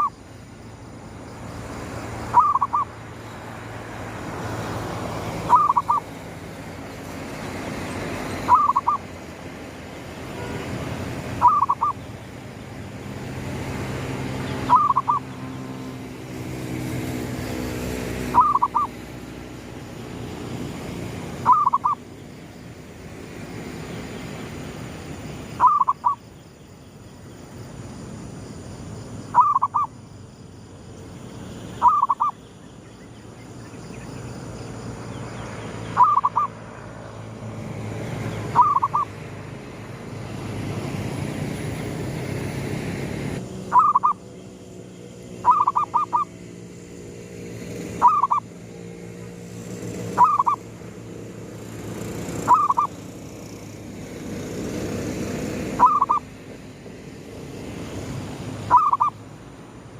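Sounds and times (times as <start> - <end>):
dove cooing: 2.3 - 2.9, 5.4 - 6.1, 8.4 - 9.0, 11.4 - 12.0, 14.7 - 15.3, 18.3 - 19.0, 21.4 - 22.0, 25.6 - 26.2, 29.4 - 29.9, 31.8 - 32.3, 36.0 - 36.6, 38.5 - 39.1, 43.7 - 44.2, 45.4 - 46.3, 48.0 - 48.4, 50.2 - 50.6, 52.5 - 52.9, 55.7 - 56.2, 58.7 - 59.1.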